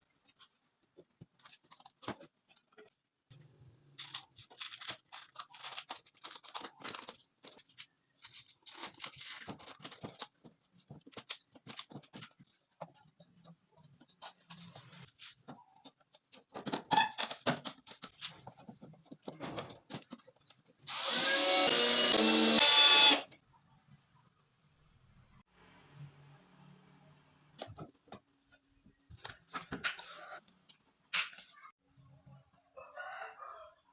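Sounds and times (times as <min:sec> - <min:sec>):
power drill running: 0:20.9 - 0:23.3.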